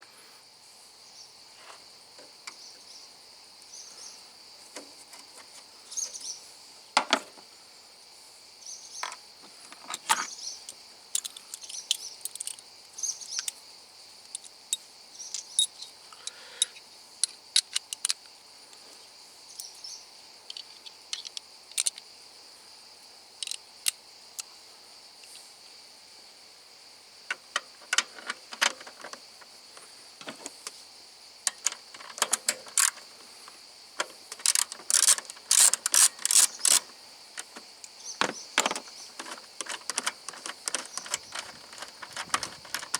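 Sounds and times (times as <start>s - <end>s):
insects chirring: 0.0s - 42.9s
sharp clicks and clatter: 31.5s - 33.0s, 34.0s - 37.6s, 38.2s - 42.9s.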